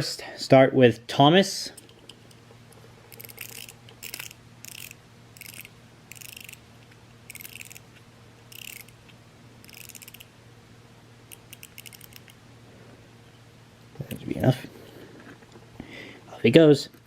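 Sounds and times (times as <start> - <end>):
wind-up toy ratcheting clicks: 3.1 - 6.6, 7.3 - 7.9, 8.5 - 9.0, 9.6 - 10.3, 11.3 - 12.4.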